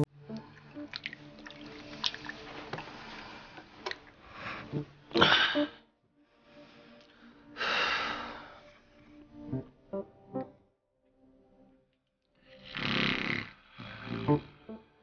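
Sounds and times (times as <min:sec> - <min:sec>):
soft background music: 0:00.0 - 0:15.0
person breathing heavily: 0:03.0 - 0:08.9.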